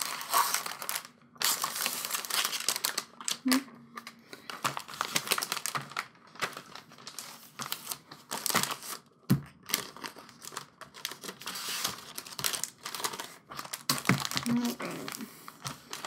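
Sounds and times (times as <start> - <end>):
packaging crinkling: 0.0 - 16.0.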